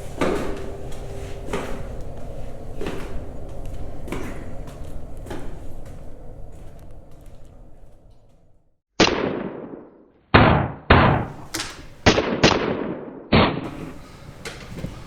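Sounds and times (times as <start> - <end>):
sharp loud bangs echoing: 9.0 - 14.2.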